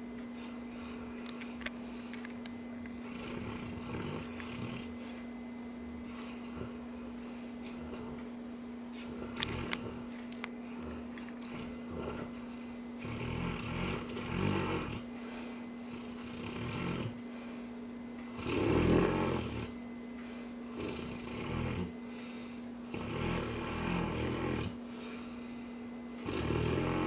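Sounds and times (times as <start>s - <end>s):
dog snoring: 2.7s - 8.3s, 8.9s - 15.1s, 15.8s - 17.2s, 18.3s - 19.8s, 20.7s - 22.2s, 22.8s - 25.2s, 26.2s - 27.0s.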